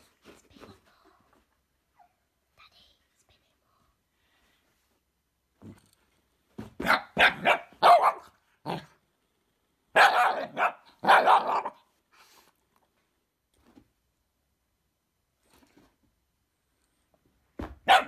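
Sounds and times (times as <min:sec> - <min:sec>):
dog barking: 0:06.8 - 0:08.9, 0:09.9 - 0:11.9
dog bark-growls: 0:06.8 - 0:09.0, 0:10.0 - 0:11.8.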